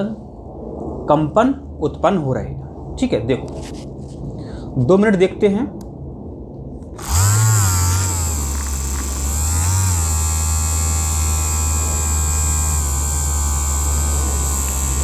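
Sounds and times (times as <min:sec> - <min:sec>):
vibration machine electric buzz: 0:06.9 - 0:15.0.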